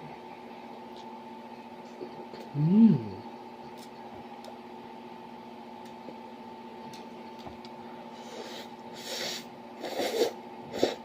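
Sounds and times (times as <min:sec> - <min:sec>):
electrical hum: 0:00.0 - 0:11.0
soft mouth sounds: 0:01.9 - 0:03.3.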